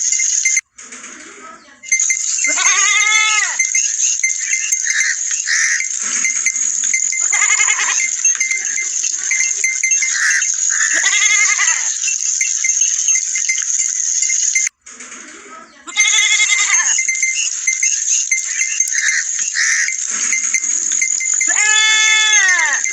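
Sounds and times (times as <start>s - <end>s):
high-pitched drone: 1.9s - 14.7s, 16.0s - 22.9s
goats bleating: 2.5s - 3.6s, 7.0s - 8.2s, 10.2s - 11.9s, 15.9s - 17.0s, 21.4s - 22.9s.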